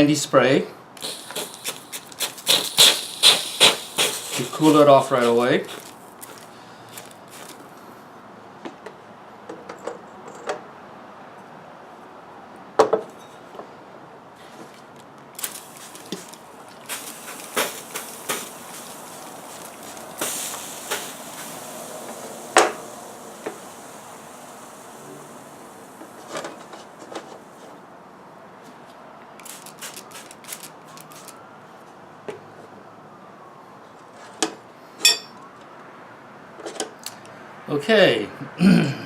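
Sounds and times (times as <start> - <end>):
water spray hissing: 1.0 - 7.6, 15.4 - 27.1, 29.4 - 31.4
copper pipe clinking and knocking: 35.0 - 35.4.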